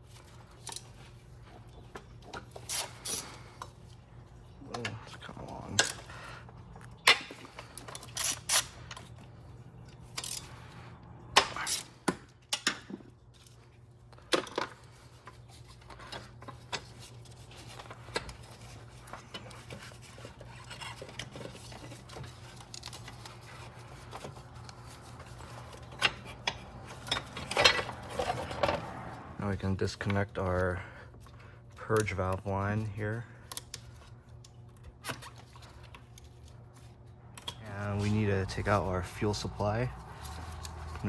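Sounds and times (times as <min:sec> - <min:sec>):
metal tools and bolts clinking: 0:11.4 - 0:13.6, 0:25.2 - 0:28.9.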